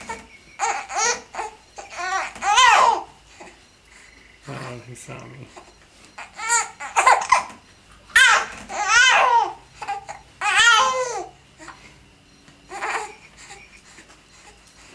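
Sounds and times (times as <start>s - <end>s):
baby babbling: 0.0s - 3.6s, 5.5s - 7.4s, 8.2s - 11.8s, 12.7s - 13.7s.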